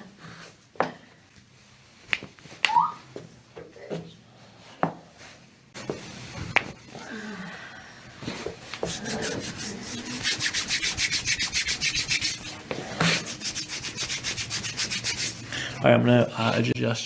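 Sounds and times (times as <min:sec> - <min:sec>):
hands rubbing skin: 0:08.7 - 0:15.5.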